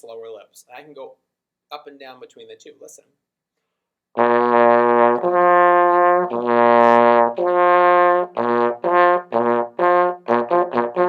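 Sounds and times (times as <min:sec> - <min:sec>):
trombone lip slur: 0:04.2 - 0:11.0.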